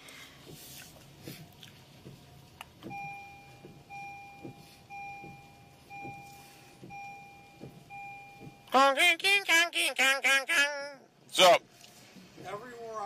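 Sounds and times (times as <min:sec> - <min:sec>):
two-tone warning beep: 0:02.9 - 0:09.0.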